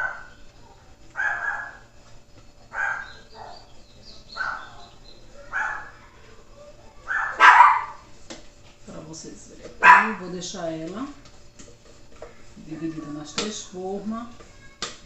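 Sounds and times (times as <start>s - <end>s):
dog barking: 0.0s - 0.4s, 1.1s - 1.9s, 2.7s - 3.7s, 4.4s - 6.0s, 7.0s - 8.0s, 9.8s - 10.2s.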